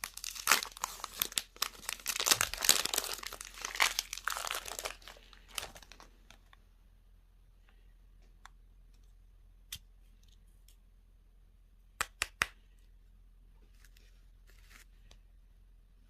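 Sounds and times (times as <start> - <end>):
packaging rustle: 0.0 - 6.4.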